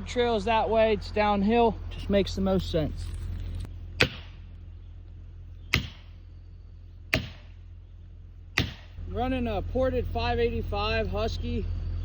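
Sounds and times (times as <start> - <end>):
steady low hum: 0.0 - 12.0
sharp strikes: 4.0 - 4.5, 5.7 - 6.2, 7.1 - 7.6, 8.6 - 9.0.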